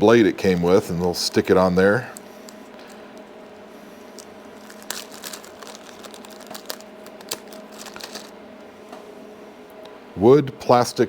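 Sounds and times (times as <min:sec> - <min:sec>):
plastic packaging crinkling: 0:04.1 - 0:08.4.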